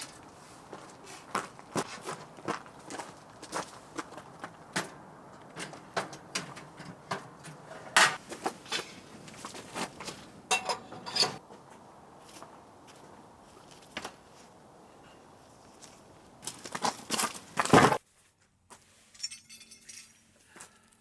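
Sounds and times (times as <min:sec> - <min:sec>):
short metallic clink: 0:10.5 - 0:11.4.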